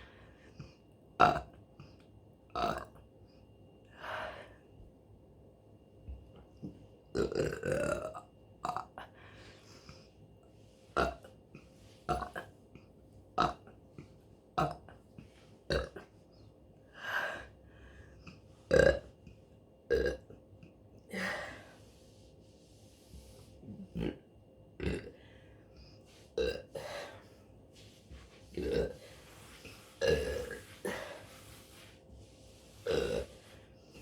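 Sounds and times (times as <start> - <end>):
woman belching: 15.7 - 16.0, 18.7 - 19.1.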